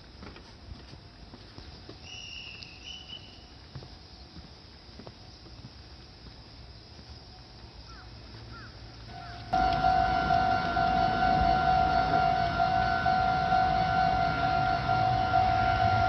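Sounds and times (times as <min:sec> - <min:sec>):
faint ticks and steps: 0:00.0 - 0:11.0.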